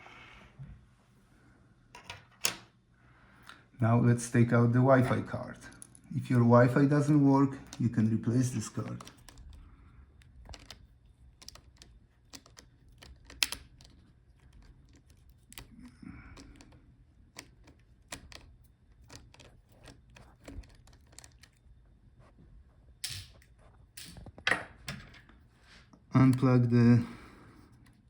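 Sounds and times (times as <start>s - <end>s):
hand tools clicking on laptop: 8.8s - 21.6s.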